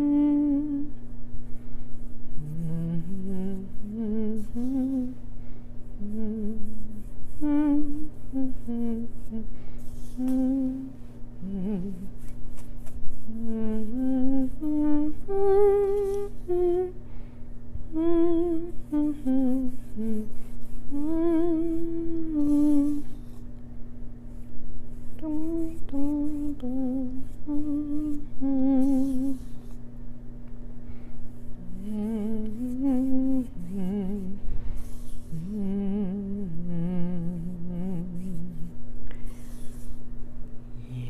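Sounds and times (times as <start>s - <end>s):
woman humming: 0.0s - 1.1s, 2.3s - 5.2s, 6.0s - 12.2s, 13.2s - 17.0s, 17.9s - 23.2s, 25.1s - 29.5s, 31.5s - 39.2s, 40.8s - 41.0s.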